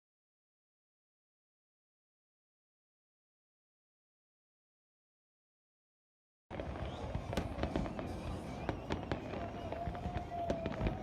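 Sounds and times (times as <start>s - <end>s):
fireworks bangs and crackles: 6.5s - 11.0s.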